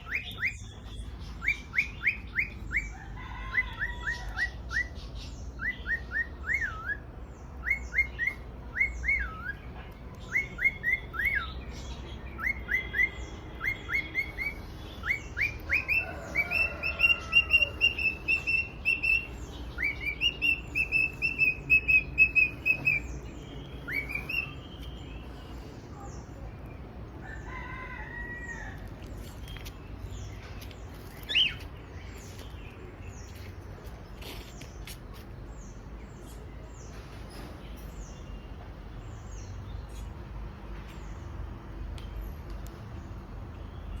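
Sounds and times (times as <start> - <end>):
cockatiel whistling chirps: 5.6 - 7.0, 12.4 - 23.1, 23.8 - 24.6.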